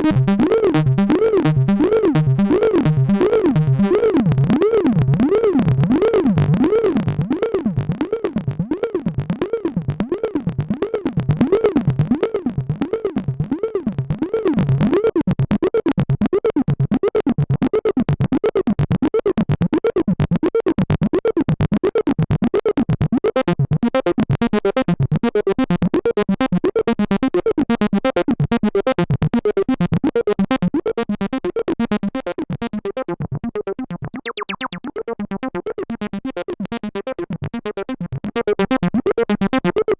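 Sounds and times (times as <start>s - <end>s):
synthesizer acid bass line: 0.0s - 17.9s, 30.8s - 39.9s.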